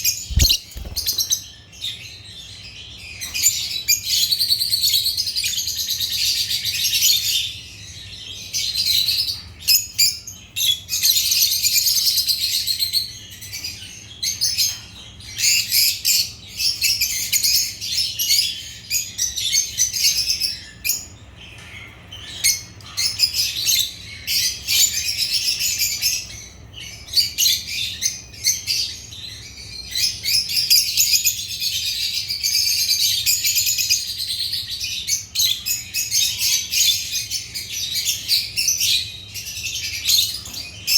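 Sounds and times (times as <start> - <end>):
lovebirds chirping: 0.0 - 8.1.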